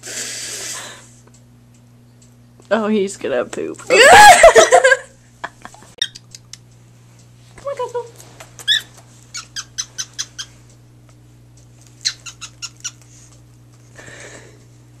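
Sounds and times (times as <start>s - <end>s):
small bird chirping: 8.6s - 10.6s, 12.0s - 13.0s.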